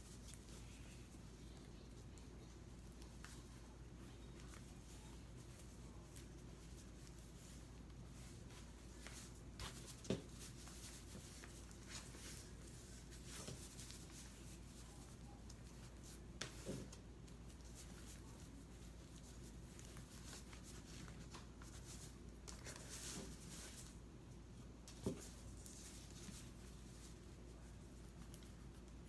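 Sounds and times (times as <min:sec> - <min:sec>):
cloth rustling and scratching: 0:04.4 - 0:24.0.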